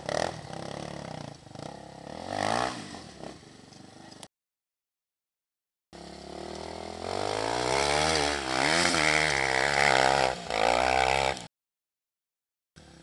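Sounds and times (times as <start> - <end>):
motorcycle engine revving: 0.0 - 4.3, 6.0 - 11.5
rear wheel spinning in dirt: 6.0 - 11.5.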